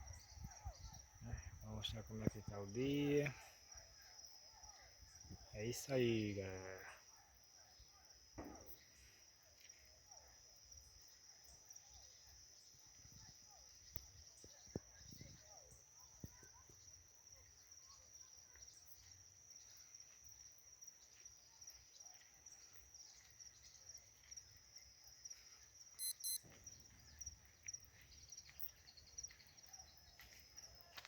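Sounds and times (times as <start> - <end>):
crickets trilling: 0.0 - 31.0
sharp high chirps: 26.0 - 26.5.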